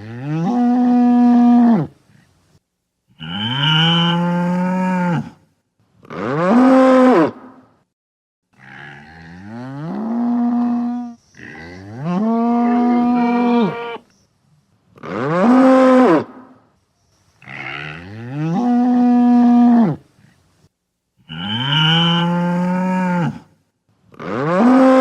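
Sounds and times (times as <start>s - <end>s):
bull mooing: 8.6s - 14.0s.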